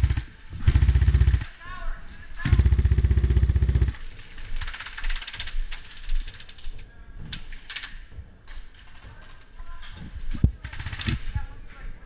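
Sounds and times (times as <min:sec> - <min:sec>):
airsoft gun firing full-auto: 0:00.0 - 0:01.5, 0:02.4 - 0:04.0.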